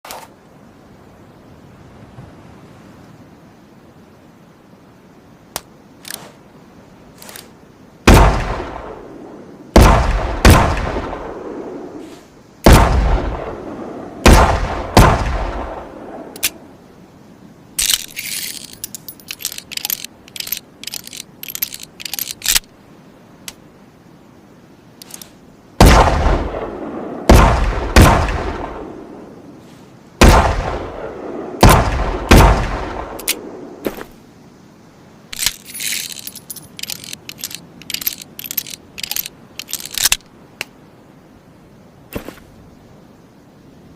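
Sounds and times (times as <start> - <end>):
metallic clicks and rattles: 17.8 - 22.7, 35.3 - 40.3.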